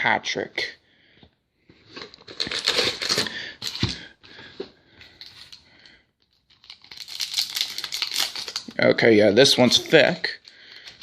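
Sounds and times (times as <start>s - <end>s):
wrapper crinkling: 6.3s - 8.8s.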